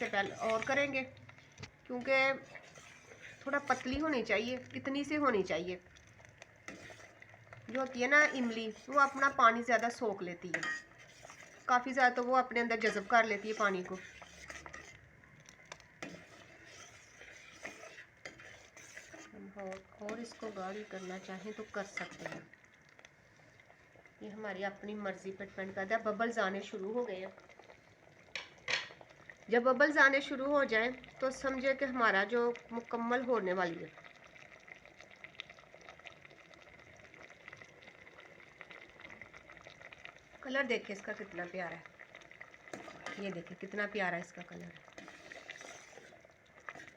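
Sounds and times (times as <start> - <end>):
spoon scraping pot: 0.0 - 5.5, 6.2 - 22.6, 42.6 - 43.7, 44.8 - 46.9
spoon stirring thick sauce: 0.0 - 23.7, 39.4 - 46.9.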